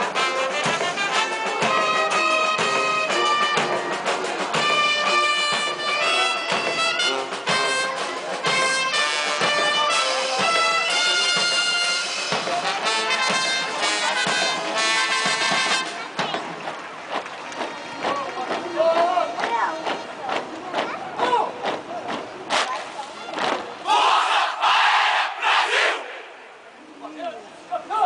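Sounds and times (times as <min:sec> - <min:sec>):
brass band playing: 0:00.0 - 0:18.1
steady drum beat: 0:00.0 - 0:24.1.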